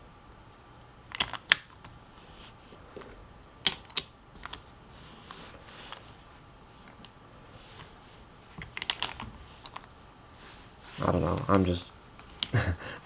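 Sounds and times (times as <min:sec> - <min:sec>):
plastic puzzle pieces clicking: 0:01.1 - 0:01.9, 0:03.6 - 0:04.6, 0:08.6 - 0:09.9, 0:12.2 - 0:12.6.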